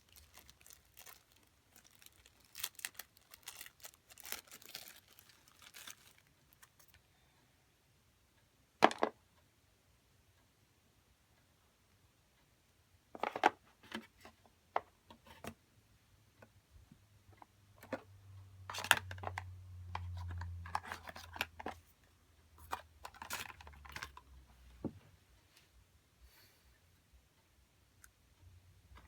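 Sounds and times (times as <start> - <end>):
hands handling packaging: 0.0 - 7.0, 20.0 - 21.8, 22.6 - 24.3.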